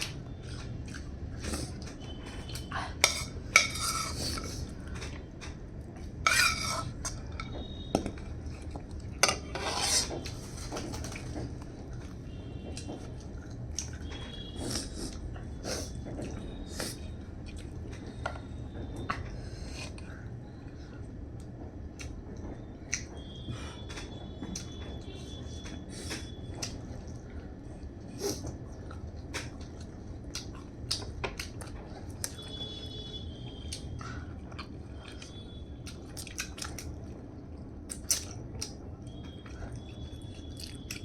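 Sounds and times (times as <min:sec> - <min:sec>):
dishes and cutlery clinking: 0:03.0 - 0:05.6, 0:06.2 - 0:07.6, 0:09.2 - 0:10.2.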